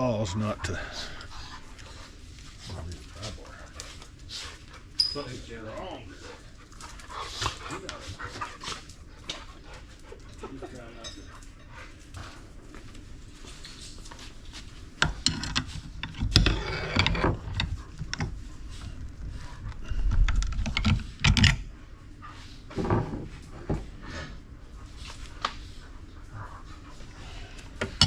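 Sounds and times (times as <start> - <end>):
hand tools clicking and scraping metal: 13.7 - 18.8.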